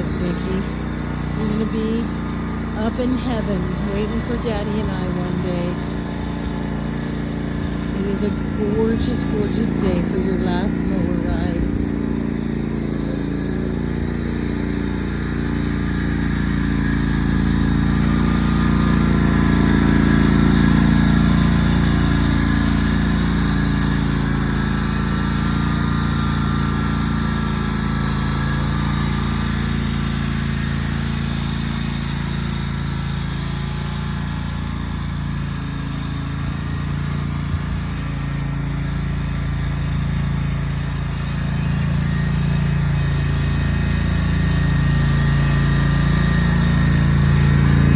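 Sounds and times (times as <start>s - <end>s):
riding lawn mower engine: 0.0s - 47.9s.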